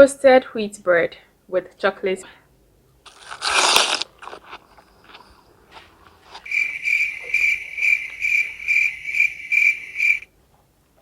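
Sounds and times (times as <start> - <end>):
crunching and chewing toast: 3.0 - 6.5
high insect-like chirping: 6.5 - 10.3.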